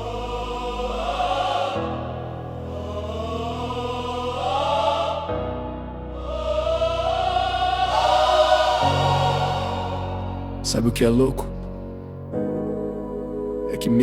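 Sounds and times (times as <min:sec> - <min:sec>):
choir singing held notes: 0:00.0 - 0:11.4, 0:12.4 - 0:14.0.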